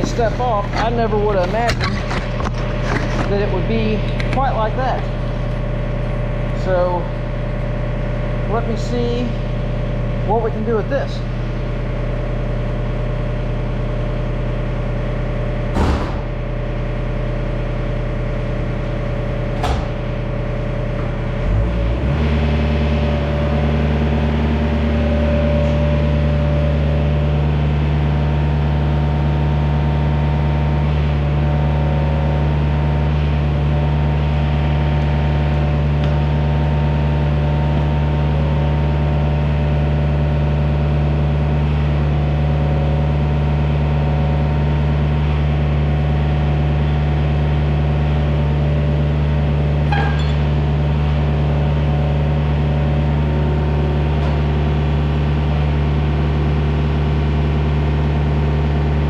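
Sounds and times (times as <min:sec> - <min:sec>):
excavator engine running: 0:00.0 - 0:10.4, 0:11.3 - 0:59.0.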